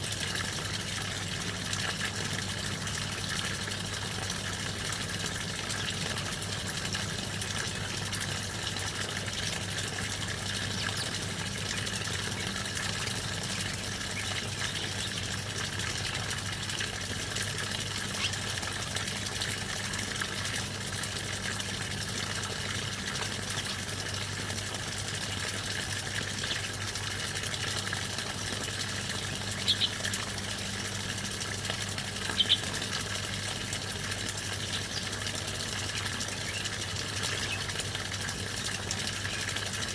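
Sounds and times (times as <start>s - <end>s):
high bird chirps: 29.6s - 30.0s, 32.3s - 32.7s.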